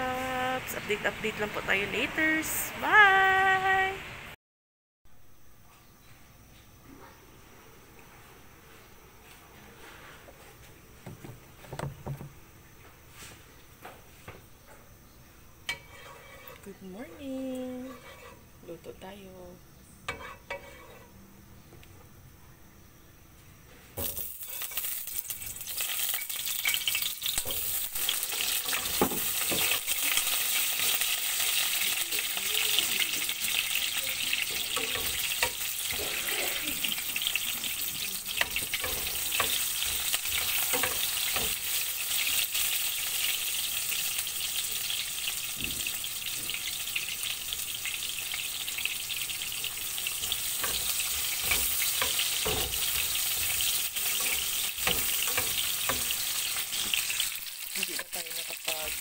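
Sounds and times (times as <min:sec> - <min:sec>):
food sizzling in a pan: 0:00.0 - 0:04.4, 0:15.6 - 0:19.4, 0:20.0 - 0:21.3, 0:23.9 - 0:59.0
cooking utensil knocks and scrapes: 0:11.0 - 0:12.3, 0:15.7 - 0:16.6, 0:20.1 - 0:21.1, 0:28.7 - 0:29.8, 0:50.6 - 0:56.1.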